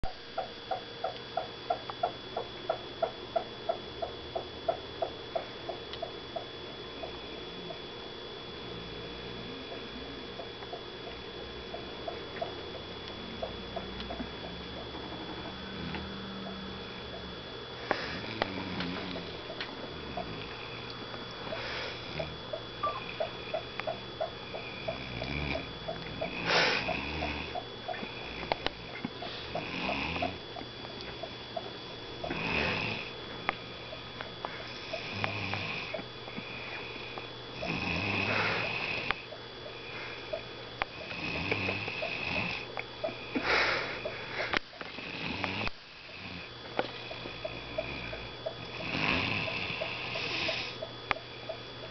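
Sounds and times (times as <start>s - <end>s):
person snoring: 15.4s - 23.7s, 24.5s - 30.4s, 32.2s - 33.1s, 34.6s - 39.2s, 41.0s - 42.7s, 43.3s - 50.8s.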